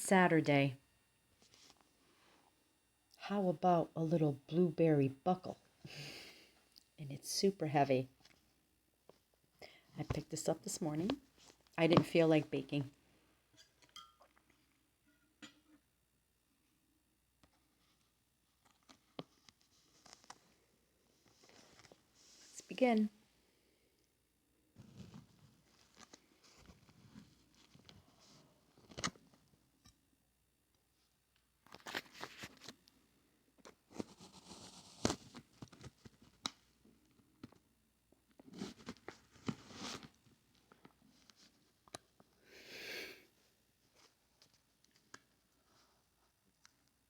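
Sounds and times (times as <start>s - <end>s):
food packaging crinkling and tearing: 31.6s - 32.8s.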